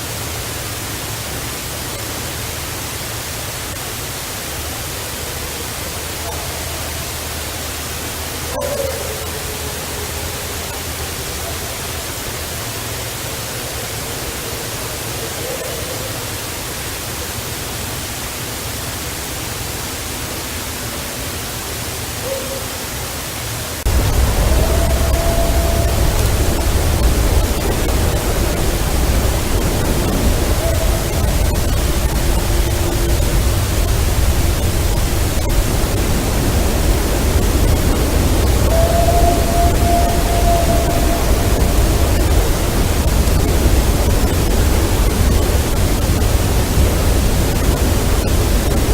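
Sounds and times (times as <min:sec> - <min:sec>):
loud recording hiss: 0:00.0 - 0:48.9
faint wavering calls: 0:05.2 - 0:16.8, 0:23.8 - 0:45.7
low rumble: 0:23.9 - 0:48.9.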